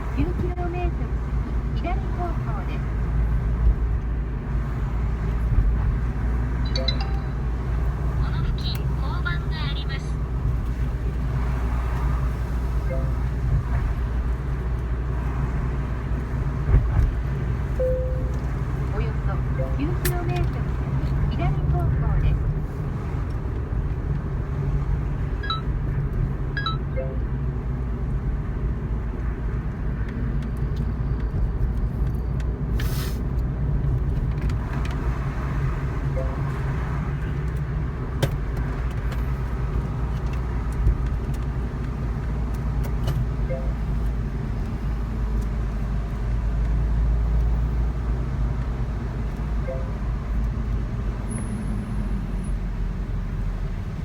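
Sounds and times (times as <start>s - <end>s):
car engine running: 0.0s - 29.6s
road and tyre noise: 0.0s - 54.0s.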